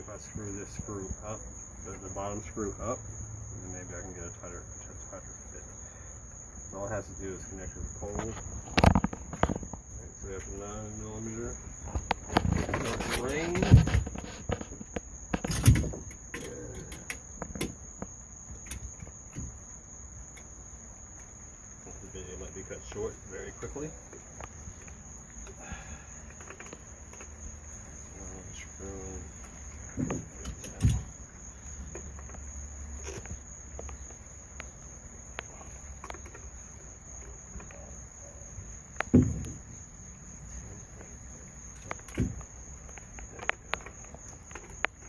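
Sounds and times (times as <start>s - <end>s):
crickets trilling: 0.0s - 45.0s
small tools clicking and knocking: 11.9s - 17.8s, 29.4s - 31.2s.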